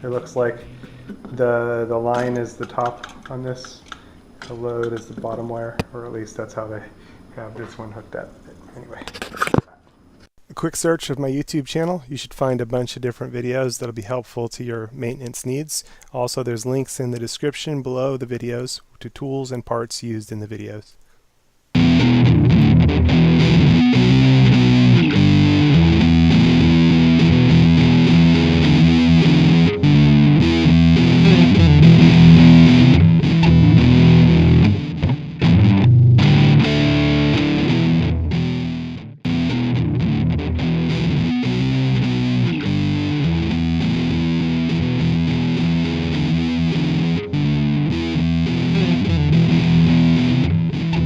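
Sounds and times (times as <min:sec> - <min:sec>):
steady beat: 0:21.8 - 0:38.6
bass line: 0:21.8 - 0:51.0
distorted electric guitar: 0:21.8 - 0:51.0.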